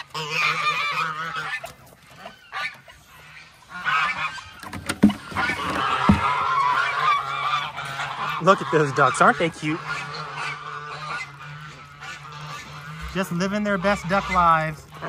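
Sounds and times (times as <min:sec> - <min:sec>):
geese honking: 0:00.0 - 0:15.0
sharp knocks: 0:04.7 - 0:06.4.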